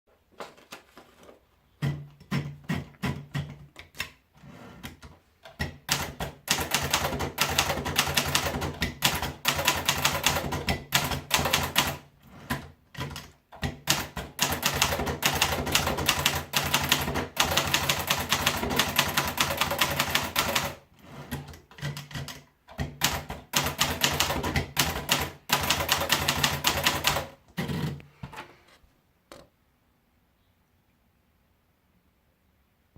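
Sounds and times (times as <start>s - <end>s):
manual typewriter keystrokes: 5.4s - 27.4s.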